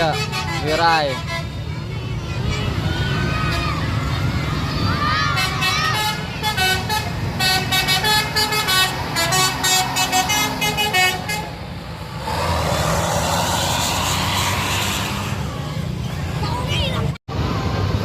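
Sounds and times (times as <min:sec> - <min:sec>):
loud rushing noise: 0:08.9 - 0:16.0.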